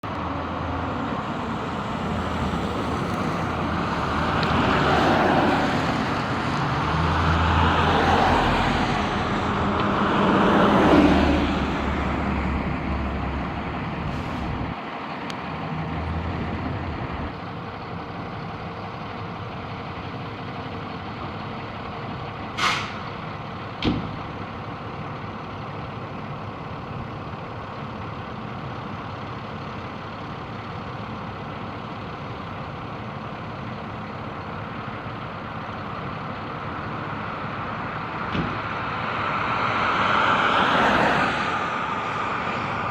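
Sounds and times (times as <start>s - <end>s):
fire engine idling: 0.0s - 6.8s, 11.6s - 15.7s, 16.3s - 39.3s
heavy vehicle passing: 0.4s - 14.8s, 37.0s - 42.9s
air brakes hissing: 14.0s - 14.7s, 22.6s - 23.1s.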